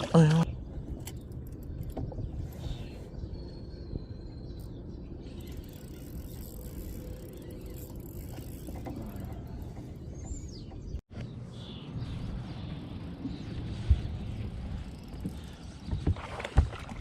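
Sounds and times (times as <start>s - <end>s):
water noise: 0.0s - 2.5s, 14.6s - 17.0s
wind: 0.0s - 17.0s
fishing reel whirring: 5.2s - 10.0s.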